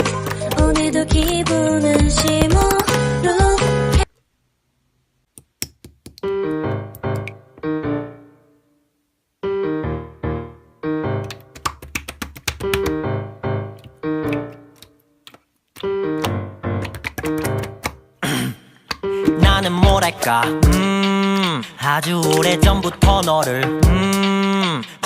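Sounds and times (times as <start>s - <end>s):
piano chords: 6.3s - 8.8s, 9.4s - 15.0s, 15.8s - 18.2s, 19.0s - 21.0s.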